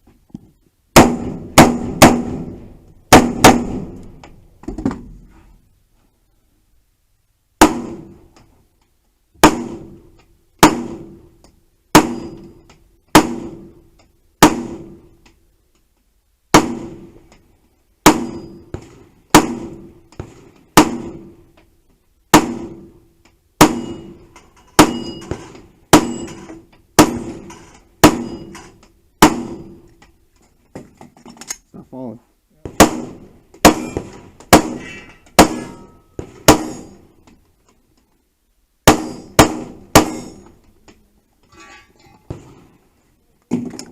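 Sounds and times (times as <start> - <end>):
gunshots with ringing tail: 1.0 - 4.1, 7.6 - 8.2, 9.4 - 10.0, 10.6 - 11.2, 11.9 - 13.8, 14.4 - 15.0, 16.6 - 17.2, 18.0 - 18.7, 19.3 - 20.0, 20.8 - 21.4, 22.3 - 23.0, 23.6 - 24.2, 24.8 - 26.4, 27.0 - 28.6, 29.2 - 29.8, 32.7 - 37.0, 38.9 - 40.4.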